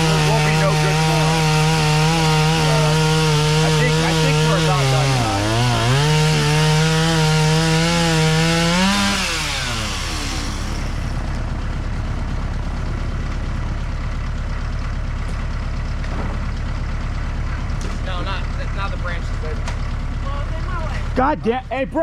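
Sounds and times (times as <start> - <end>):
chainsaw revving and idling: 0.0 - 14.4.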